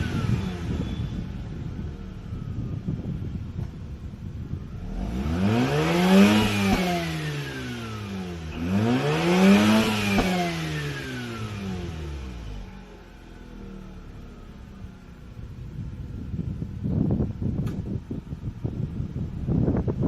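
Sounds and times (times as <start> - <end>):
rotary engine revving: 0.0 - 2.7, 4.7 - 13.8.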